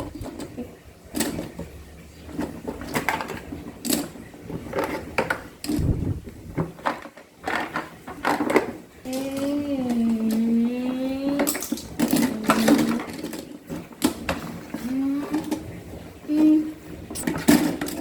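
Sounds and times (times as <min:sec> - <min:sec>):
washing machine humming: 0:00.0 - 0:18.0.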